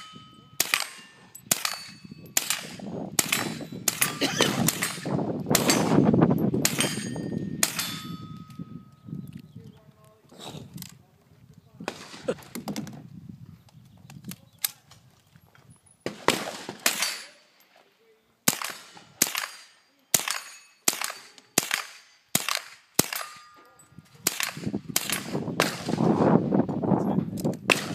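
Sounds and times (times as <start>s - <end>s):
rifle shots: 0.6s - 8.1s, 16.1s - 17.4s, 18.4s - 23.6s, 24.2s - 26.2s, 27.7s - 27.9s
steel target ringing: 6.7s - 8.7s.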